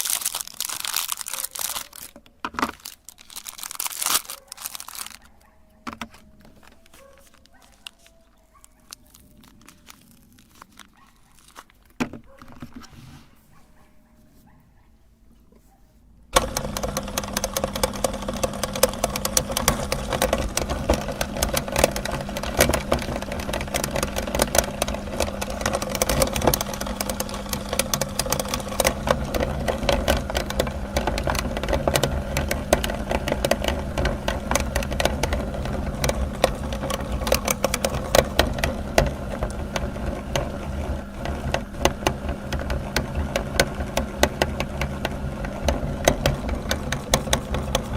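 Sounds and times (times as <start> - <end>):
crackling and clicking: 0.0 - 12.8, 16.3 - 47.9
meat grinder motor hum: 16.3 - 47.9.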